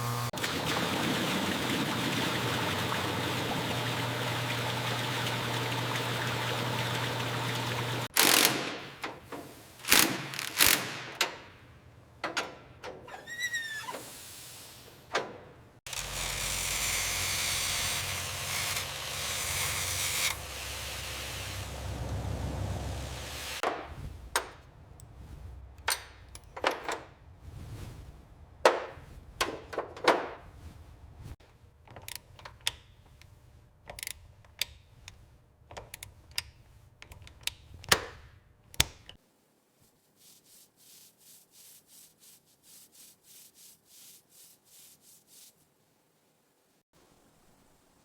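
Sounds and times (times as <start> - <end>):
rubbing strokes on a surface: 39.6 - 46.1.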